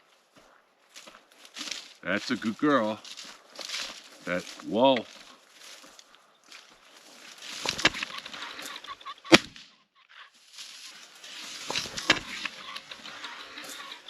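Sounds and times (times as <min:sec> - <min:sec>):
rustling through dry cover: 0:00.0 - 0:09.1, 0:10.3 - 0:14.0
pheasant cackling: 0:07.4 - 0:10.4, 0:11.3 - 0:14.0
shotgun shot: 0:09.3 - 0:09.7.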